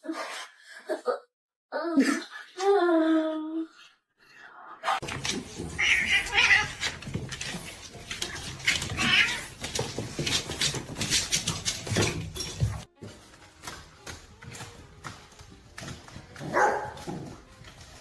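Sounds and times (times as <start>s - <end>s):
cat meowing and yowling: 8.7s - 9.6s.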